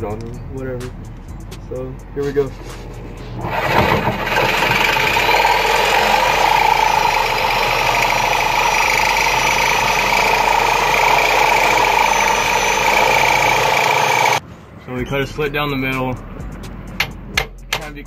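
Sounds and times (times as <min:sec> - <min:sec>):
reciprocating saw cutting: 0:03.3 - 0:14.4.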